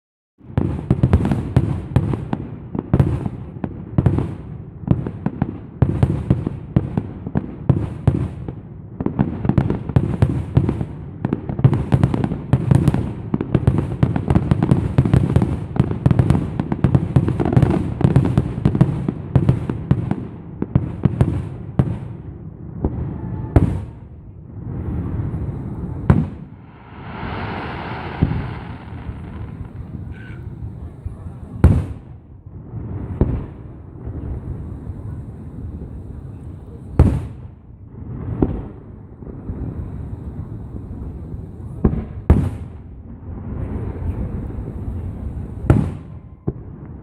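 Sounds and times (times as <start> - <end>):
fireworks booming and crackling: 0.4 - 47.0.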